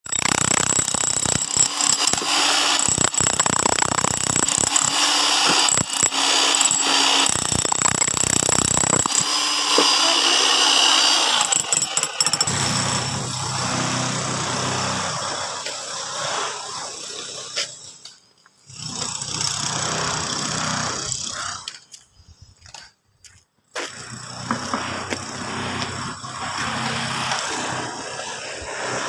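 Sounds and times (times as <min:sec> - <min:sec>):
demolition hammer breaking concrete: 0:00.1 - 0:13.0.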